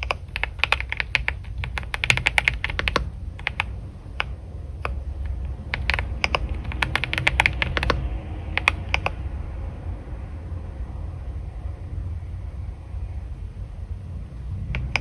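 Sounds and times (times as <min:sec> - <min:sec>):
typing on computer keyboard: 0:00.0 - 0:09.2, 0:14.8 - 0:15.0
low background rumble: 0:00.0 - 0:15.0.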